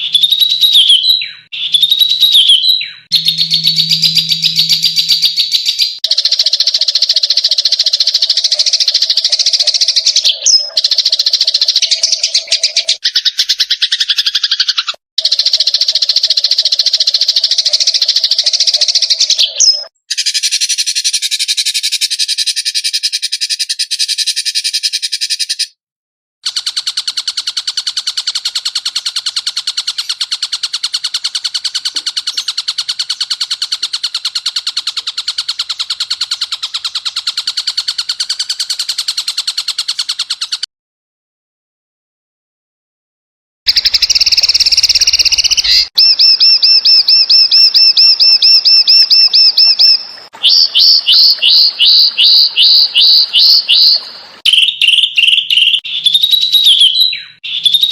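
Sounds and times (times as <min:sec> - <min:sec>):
rattling animal trills: 0:03.1 - 0:09.8.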